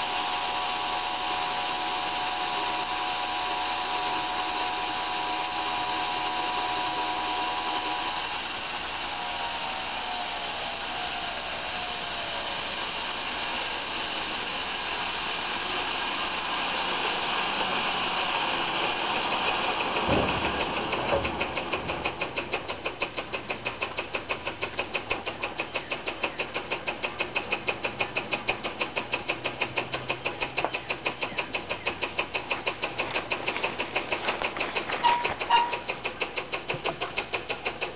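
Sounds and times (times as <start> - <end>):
sawmill engine running: 0.0 - 37.9
thump: 20.0 - 21.4.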